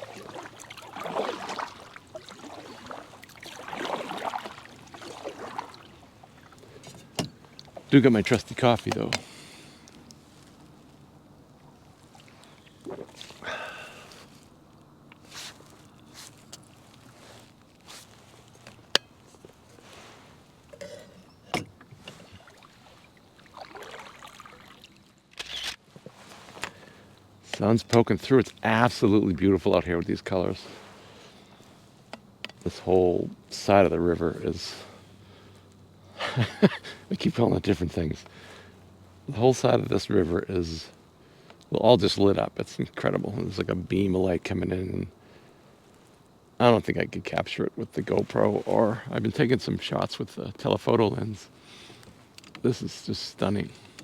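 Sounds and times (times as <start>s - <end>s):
kayak paddle splashing in water: 0.0s - 10.6s, 11.6s - 14.5s, 21.7s - 25.3s
kayak paddling in water: 0.0s - 42.4s.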